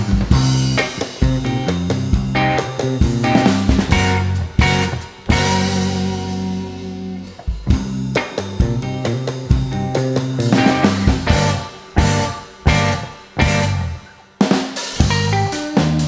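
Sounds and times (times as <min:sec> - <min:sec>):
bass guitar: 0:00.0 - 0:14.2, 0:14.8 - 0:16.0
drum kit: 0:00.0 - 0:16.0
electric guitar: 0:00.0 - 0:16.0.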